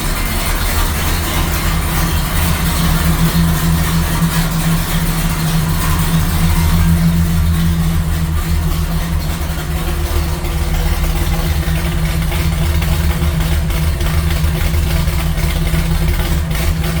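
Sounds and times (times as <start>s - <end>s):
car engine idling: 0.0s - 17.0s.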